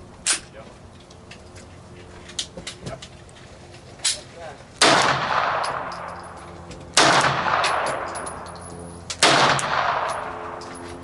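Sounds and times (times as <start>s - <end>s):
echoing gunshots: 4.8s - 6.1s, 6.9s - 8.2s, 9.2s - 10.5s.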